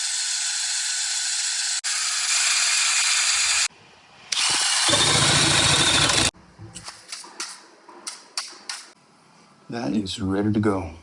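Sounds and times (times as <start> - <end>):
power drill boring wood: 0.0 - 3.7, 4.3 - 6.3.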